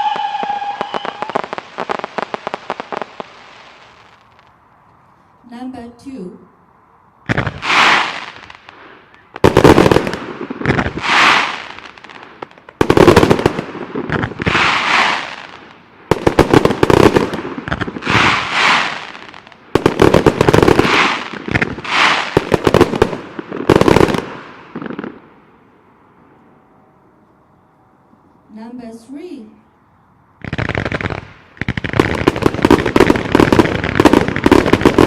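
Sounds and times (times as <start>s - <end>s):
fireworks popping and crackling: 0.0s - 4.6s, 7.3s - 25.2s, 30.4s - 35.0s.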